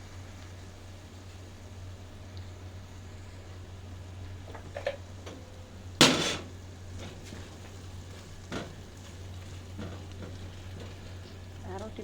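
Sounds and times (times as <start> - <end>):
steady low hum: 0.0 - 12.0
loud metal clank ringing: 6.0 - 6.5.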